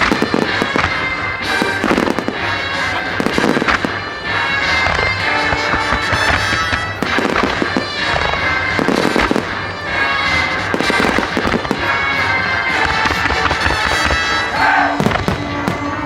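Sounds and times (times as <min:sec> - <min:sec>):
fireworks bursting and crackling: 0:00.0 - 0:16.0
music through loudspeakers: 0:00.0 - 0:16.0.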